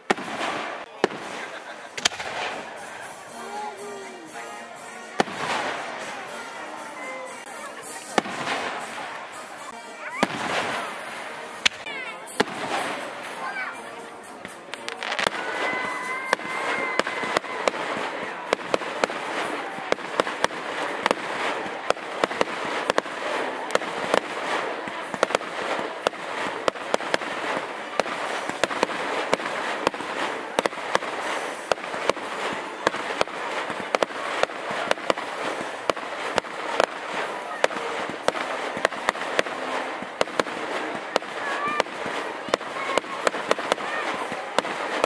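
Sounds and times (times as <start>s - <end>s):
fireworks crackling and popping: 0.0s - 45.0s.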